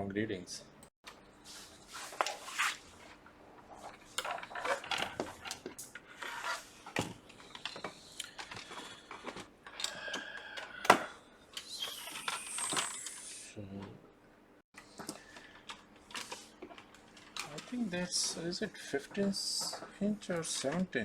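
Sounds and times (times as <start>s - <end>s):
laptop parts clicking and scraping: 3.8s - 11.0s.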